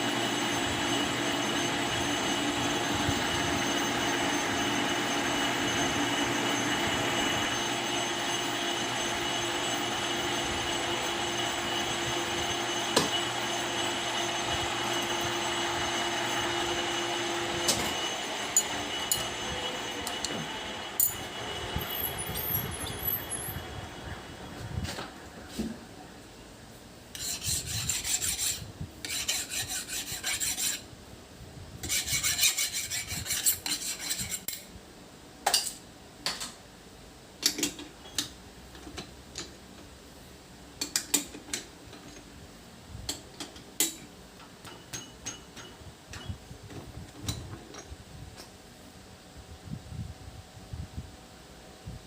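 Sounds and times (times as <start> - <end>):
hand file rasping on metal: 27.1 - 30.9, 31.8 - 34.6.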